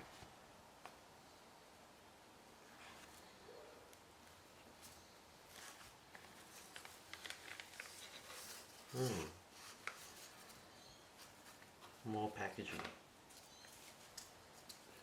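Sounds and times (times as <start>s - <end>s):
packaging rustling and clicking: 5.5s - 8.8s
brief low vocal sound: 8.9s - 9.4s.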